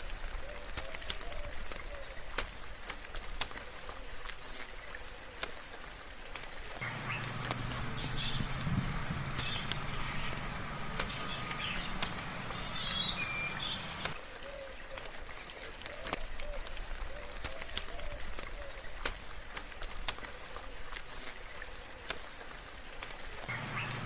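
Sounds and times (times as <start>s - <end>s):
soft rain with dripping: 0.0s - 24.0s
birds chirping and calling: 0.4s - 2.8s, 6.8s - 15.0s, 23.4s - 24.0s
low hum: 6.8s - 14.2s.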